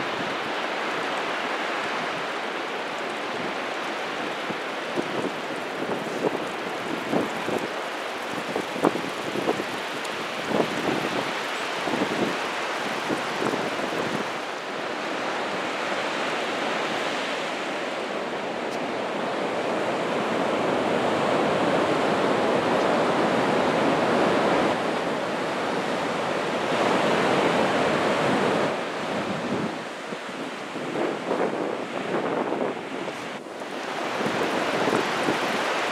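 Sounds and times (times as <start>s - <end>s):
ocean surf breaking: 0.0s - 35.9s
wind buffeting microphone: 1.9s - 14.4s, 26.7s - 35.9s.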